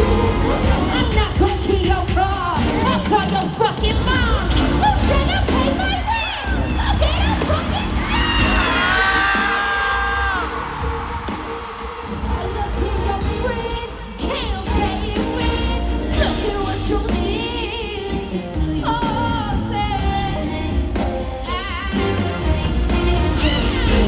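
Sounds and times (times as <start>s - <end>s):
heavy bass line: 0.0s - 1.3s
woman singing: 0.0s - 10.6s, 12.2s - 24.0s.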